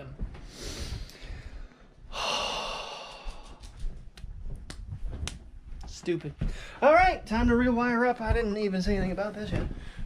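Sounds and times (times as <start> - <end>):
man sighing: 2.1 - 3.6.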